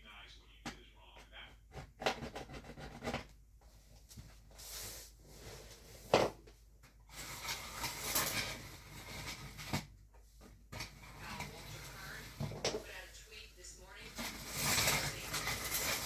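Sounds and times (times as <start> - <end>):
rustling: 2.8 - 16.0
small objects clattering: 14.0 - 16.0.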